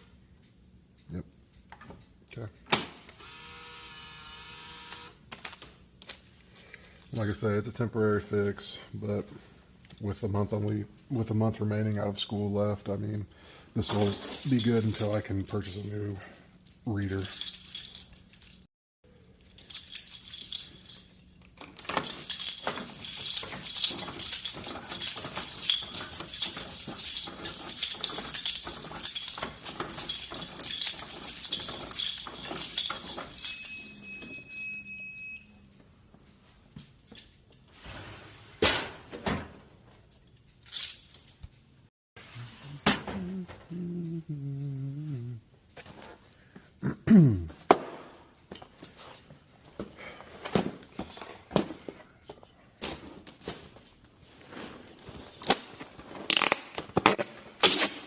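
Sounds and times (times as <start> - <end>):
small hard items clinking: 19.3 - 33.7.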